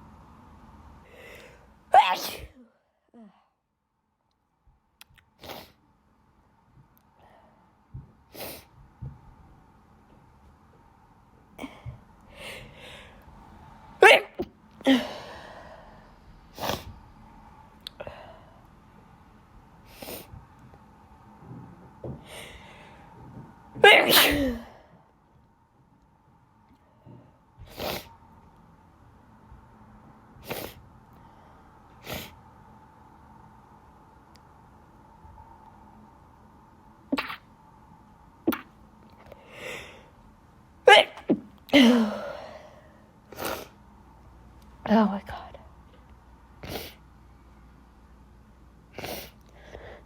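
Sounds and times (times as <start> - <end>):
woman sneezing: 1.9 - 3.3, 14.0 - 15.2, 23.8 - 24.8, 40.9 - 42.4
woman sniffing: 5.4 - 5.8, 27.7 - 28.2, 30.4 - 30.8, 43.3 - 43.8, 46.6 - 47.0, 49.0 - 50.0.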